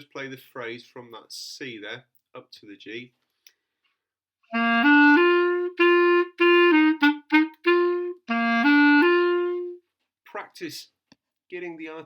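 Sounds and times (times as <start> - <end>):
clarinet playing: 4.5 - 9.8.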